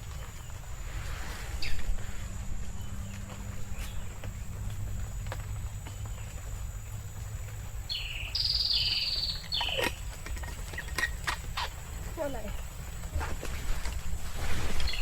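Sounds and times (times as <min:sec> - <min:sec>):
steady low rumble: 0:00.0 - 0:10.3.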